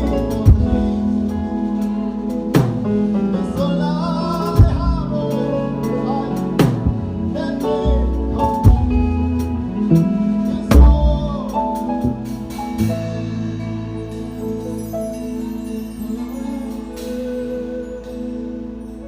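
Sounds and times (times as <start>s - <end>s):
gospel worship band music: 0.0s - 19.0s
strong drum accents: 8.4s - 14.9s.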